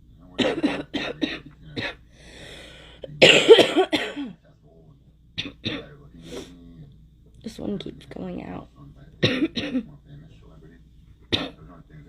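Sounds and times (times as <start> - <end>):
woman coughing: 0.4 - 2.0, 3.2 - 4.4, 9.2 - 9.9.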